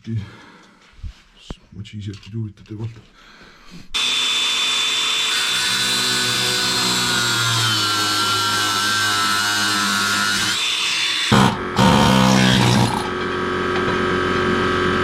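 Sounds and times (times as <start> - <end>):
angle grinder cutting metal: 4.0 - 14.1.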